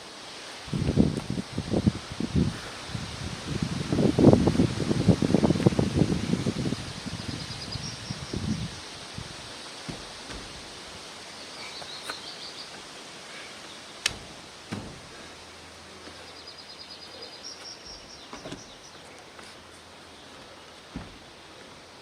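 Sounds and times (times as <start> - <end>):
outdoor background hiss: 0.0 - 22.0
small bird chirping: 11.3 - 12.8
light knocks: 14.0 - 15.2, 20.9 - 21.3.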